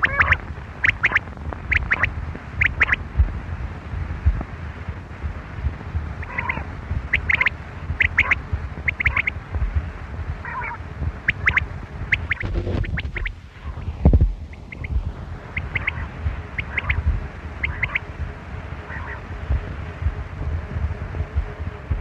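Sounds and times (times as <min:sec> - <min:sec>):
quail calling: 0:00.0 - 0:03.0, 0:06.2 - 0:09.3, 0:10.4 - 0:13.8, 0:14.5 - 0:17.0, 0:17.6 - 0:18.0, 0:18.9 - 0:19.2
steady low rumble: 0:00.0 - 0:22.0.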